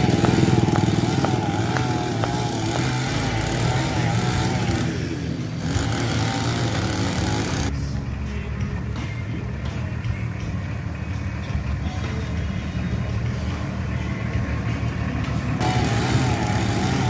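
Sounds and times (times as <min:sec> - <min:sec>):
bulldozer diesel engine running: 0:00.0 - 0:17.0.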